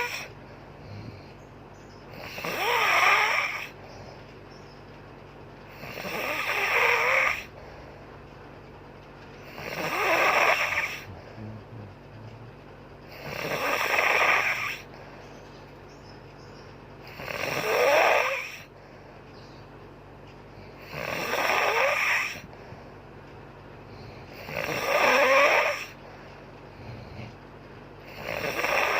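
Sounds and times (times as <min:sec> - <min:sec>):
woman snoring: 0:00.0 - 0:00.3, 0:02.1 - 0:03.8, 0:05.7 - 0:07.6, 0:09.5 - 0:11.8, 0:13.1 - 0:14.9, 0:17.1 - 0:18.7, 0:20.8 - 0:22.5, 0:24.2 - 0:26.0, 0:28.0 - 0:28.9.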